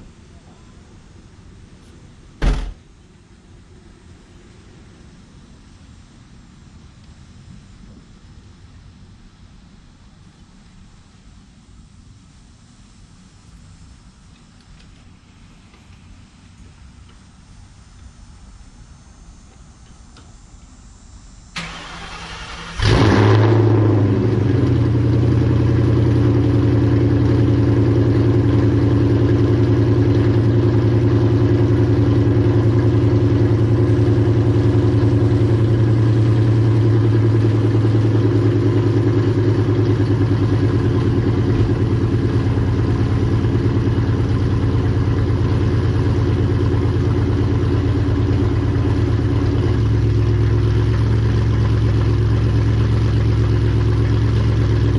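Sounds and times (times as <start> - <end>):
car engine starting and idling: 14.2 - 54.9.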